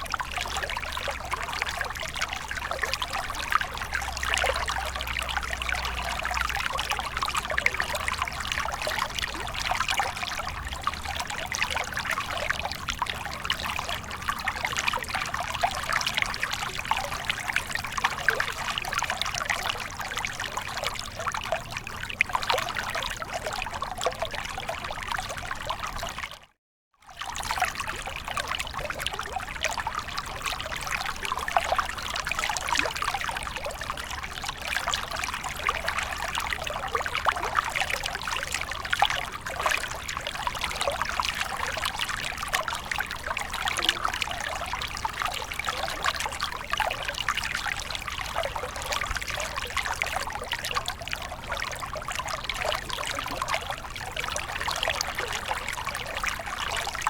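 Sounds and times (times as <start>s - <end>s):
water trickling with small splashes: 0.0s - 57.0s.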